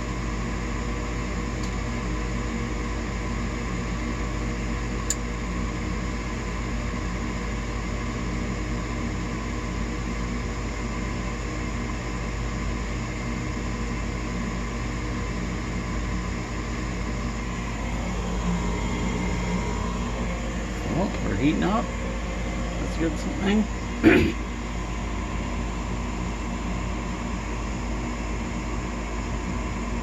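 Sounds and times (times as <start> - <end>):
furnace blower motor humming: 0.0 - 30.0
furnace ignition click: 5.0 - 5.3.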